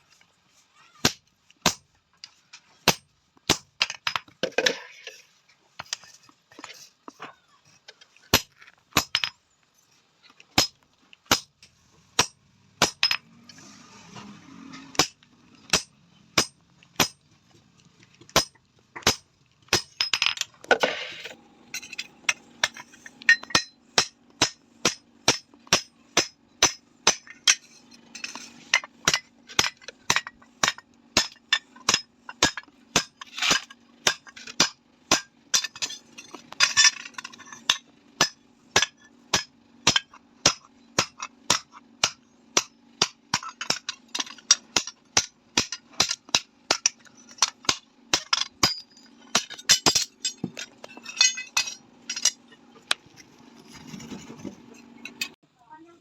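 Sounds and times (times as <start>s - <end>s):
hammer striking iron: 2.9s - 4.2s, 8.3s - 9.3s, 10.6s - 11.5s, 12.2s - 13.2s, 15.0s - 17.2s, 18.4s - 20.3s, 21.8s - 52.4s.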